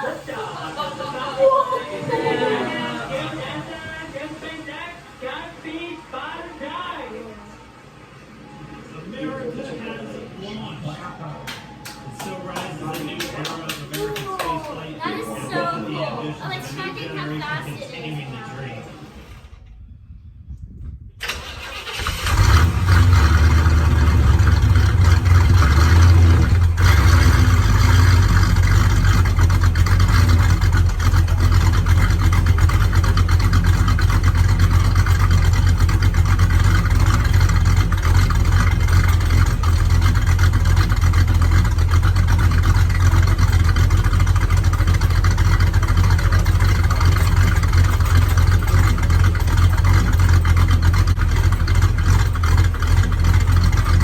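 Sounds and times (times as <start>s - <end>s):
car engine rumbling: 18.9s - 54.0s.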